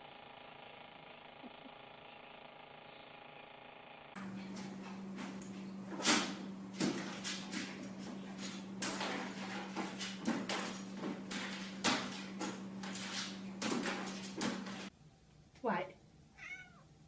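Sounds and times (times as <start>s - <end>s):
steady low hum: 3.9s - 16.4s
knocks and clatters: 4.2s - 14.9s.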